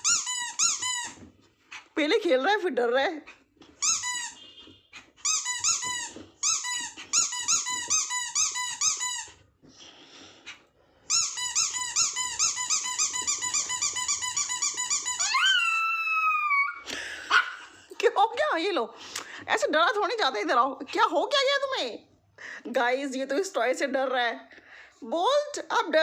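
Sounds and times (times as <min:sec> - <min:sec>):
rubber squeaky toy squeaking: 0:00.0 - 0:02.0, 0:03.2 - 0:09.6, 0:10.5 - 0:16.8.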